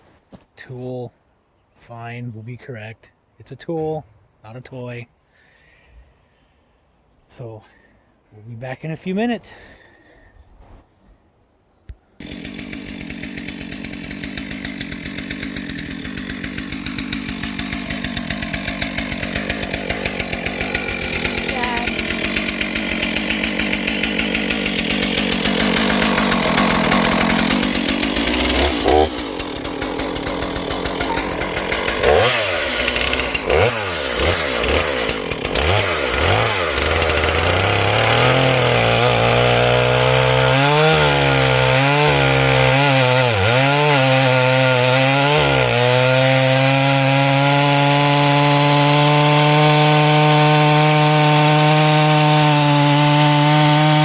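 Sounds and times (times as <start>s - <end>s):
chainsaw revving: 12.2s - 54.0s.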